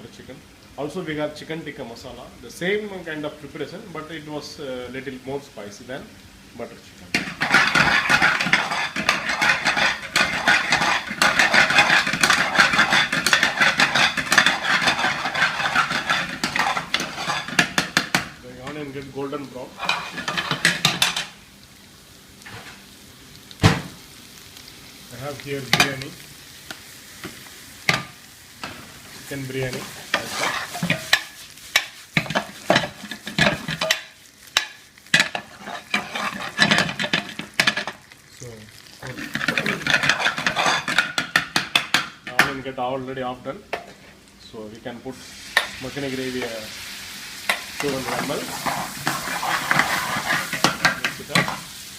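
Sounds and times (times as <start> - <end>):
onion sizzling in a pan: 0.0 - 51.9
spoon stirring against a pan: 7.1 - 18.4, 19.7 - 21.3, 29.5 - 42.5, 47.4 - 51.8.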